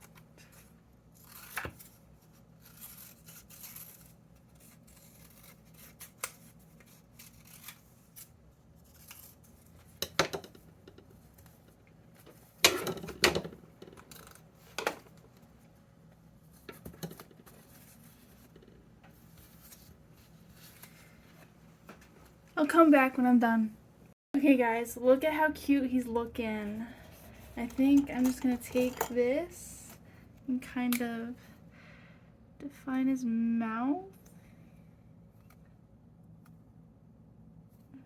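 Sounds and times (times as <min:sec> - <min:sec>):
scissors cutting paper: 0:01.2 - 0:09.6.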